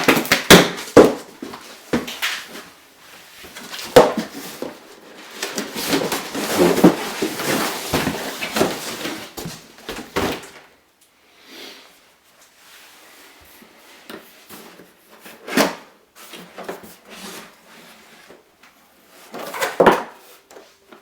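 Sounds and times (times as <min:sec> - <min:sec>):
packaging scraping and rustling: 0:03.4 - 0:10.7.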